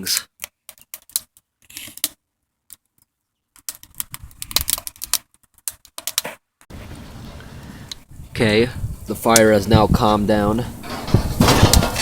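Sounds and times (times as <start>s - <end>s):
wood fire crackling and popping: 8.8s - 12.0s.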